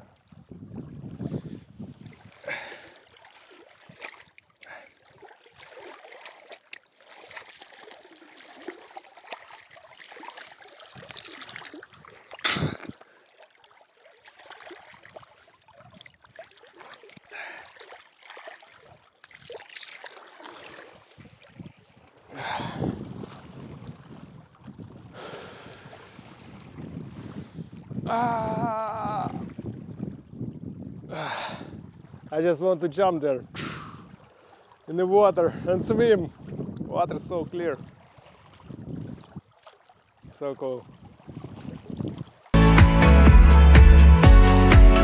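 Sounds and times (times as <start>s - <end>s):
bare feet splashing in water: 1.8s - 25.1s, 37.8s - 42.6s.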